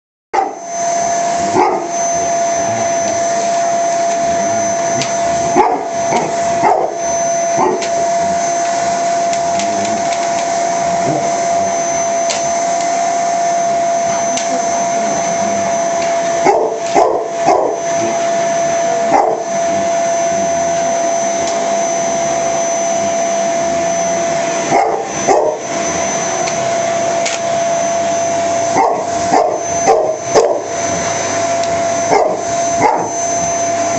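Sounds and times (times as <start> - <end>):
dog barking: 0.4 - 0.6, 1.6 - 1.9, 5.5 - 7.0, 7.6 - 7.9, 16.4 - 17.8, 19.1 - 19.4, 24.7 - 25.6, 28.8 - 30.7, 32.1 - 33.2
vacuum cleaner whining: 0.4 - 33.9.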